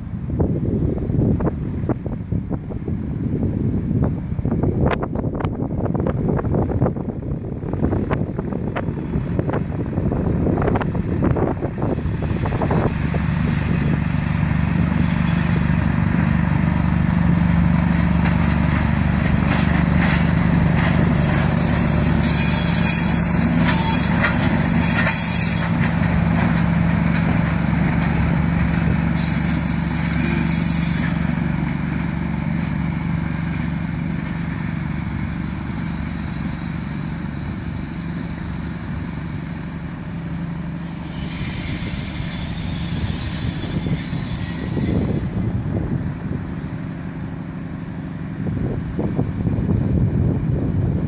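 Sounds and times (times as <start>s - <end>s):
locomotive engine humming: 0.0s - 51.0s
train wheels squealing: 10.6s - 16.8s, 20.1s - 33.1s, 39.8s - 46.7s.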